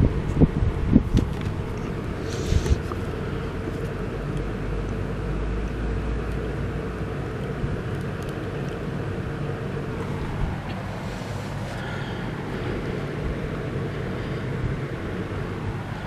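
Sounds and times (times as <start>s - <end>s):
faint hum: 0.0s - 16.0s
low rumbling background noise: 0.0s - 16.0s.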